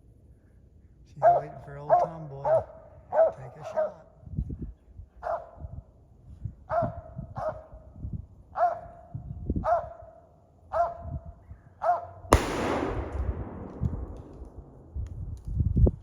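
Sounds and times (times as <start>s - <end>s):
dog barking: 1.2s - 4.1s, 5.2s - 5.6s, 6.7s - 7.7s, 8.6s - 11.1s, 11.8s - 12.1s
shotgun blast: 12.3s - 15.3s.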